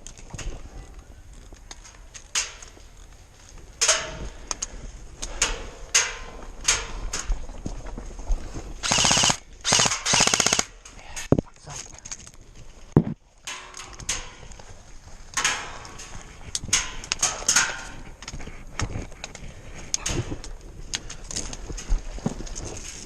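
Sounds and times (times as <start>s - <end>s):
airsoft guns firing: 8.8s - 10.8s.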